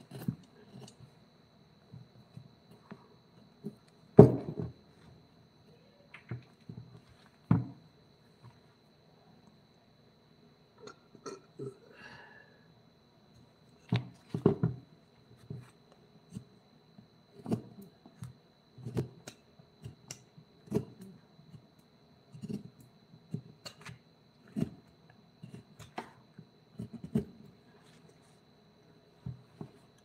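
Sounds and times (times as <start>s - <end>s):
faint high whine: 0.0s - 13.9s
knocks and scrapes on wood carving: 17.3s - 17.9s, 22.3s - 28.1s.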